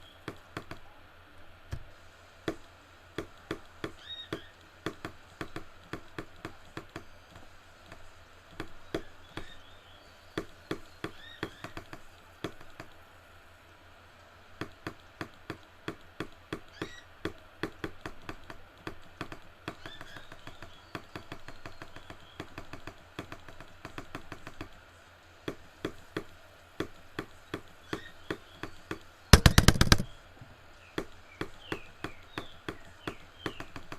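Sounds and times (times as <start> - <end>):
birds chirping: 3.4 - 5.8, 6.6 - 11.8, 16.6 - 17.2, 19.7 - 22.6, 27.2 - 33.9.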